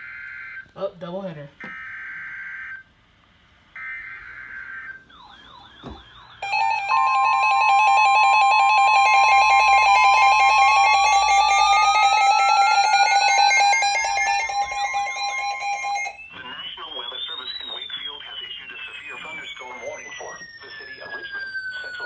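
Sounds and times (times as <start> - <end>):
overlapping attention signal tones: 3.8 - 22.0
warbling alert tone: 5.8 - 22.0.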